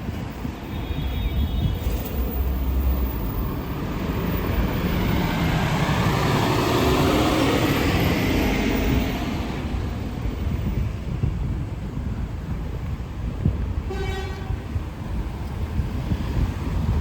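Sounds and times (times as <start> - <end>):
vehicle passing by: 2.4 - 10.0.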